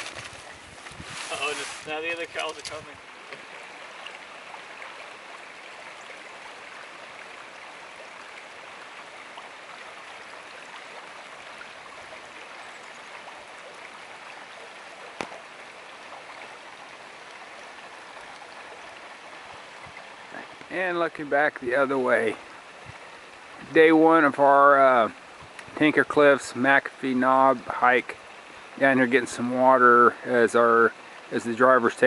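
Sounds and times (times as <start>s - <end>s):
stream flowing over rocks: 0.0s - 32.0s.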